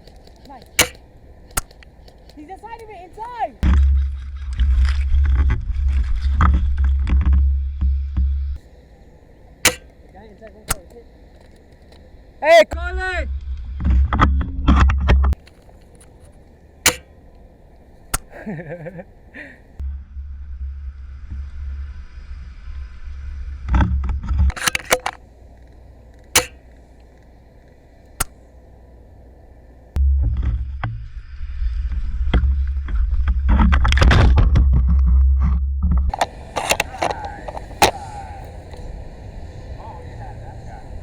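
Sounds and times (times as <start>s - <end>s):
sharp cracks: 0.0s - 2.9s, 9.6s - 12.3s, 15.4s - 18.4s, 24.5s - 28.5s, 36.1s - 38.9s
low rumble on microphone: 3.6s - 8.6s, 12.7s - 15.4s, 19.7s - 24.6s, 29.9s - 36.6s.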